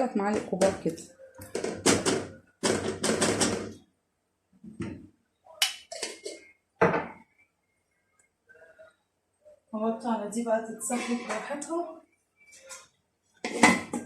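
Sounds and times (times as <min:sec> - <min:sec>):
spoon scraping and knocking pot: 0:05.6 - 0:07.2, 0:10.9 - 0:11.7, 0:13.4 - 0:14.0.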